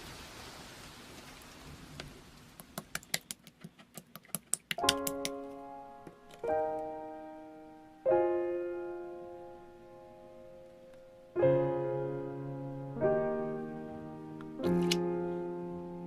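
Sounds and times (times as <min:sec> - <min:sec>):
slow piano chords: 0:04.8 - 0:16.0.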